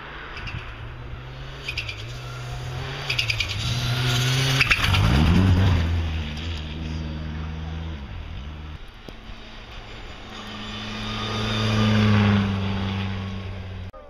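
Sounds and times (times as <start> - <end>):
rally car engine passing: 0.0 - 13.9.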